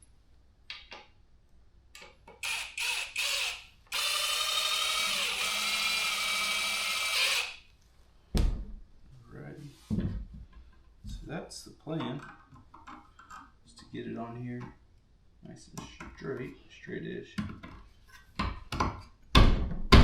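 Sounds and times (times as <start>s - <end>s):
cordless drill driving screws: 2.4s - 7.6s.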